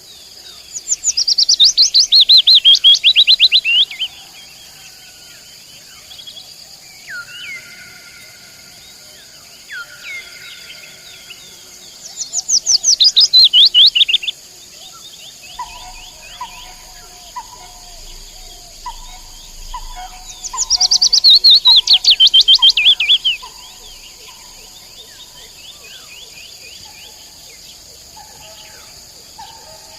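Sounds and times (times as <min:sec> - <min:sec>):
insects chirping: 0:00.0 - 0:29.9
nightingale singing: 0:00.6 - 0:04.3, 0:09.7 - 0:29.9.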